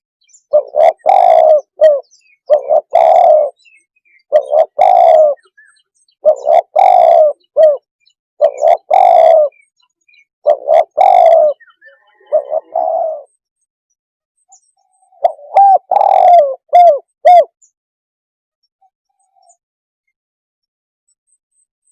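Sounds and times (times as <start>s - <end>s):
dove cooing: 0.5s - 9.6s, 10.4s - 13.3s, 15.1s - 17.6s.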